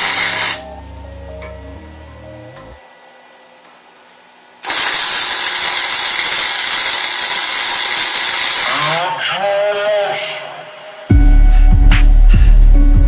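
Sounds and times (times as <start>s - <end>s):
welding arc hissing: 0.0s - 0.7s, 4.6s - 9.2s.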